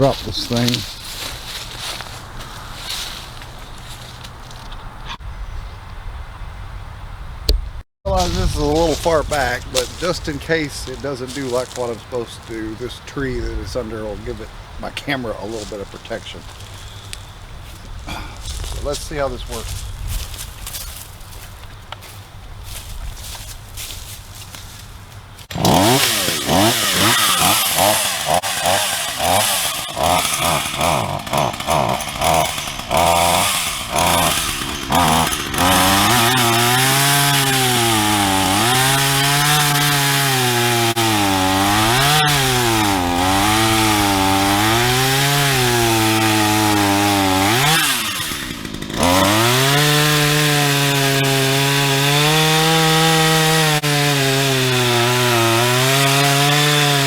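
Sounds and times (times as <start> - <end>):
chainsaw revving: 0.0 - 4.6, 8.1 - 16.7, 25.4 - 57.0
chainsaw cutting tree trunk: 0.0 - 4.7, 8.1 - 21.2, 25.4 - 57.0.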